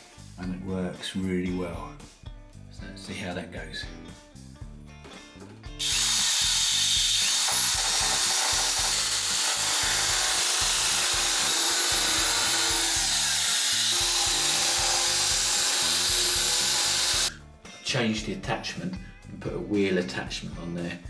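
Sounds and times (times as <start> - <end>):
electric mini sander running: 5.8 - 17.3.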